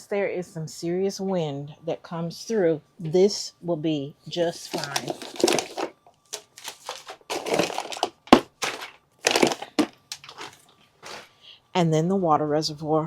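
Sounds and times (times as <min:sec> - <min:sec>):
plastic trays scraping and knocking: 0:04.5 - 0:11.3.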